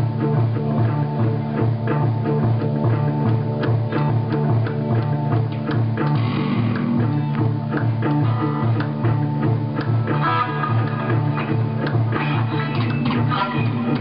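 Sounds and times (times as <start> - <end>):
guitar-led band music: 0.0 - 14.0.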